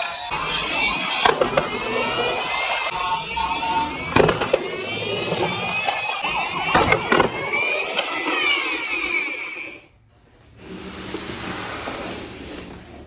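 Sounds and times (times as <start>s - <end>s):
toy vehicle sirens wailing: 0.0s - 9.9s.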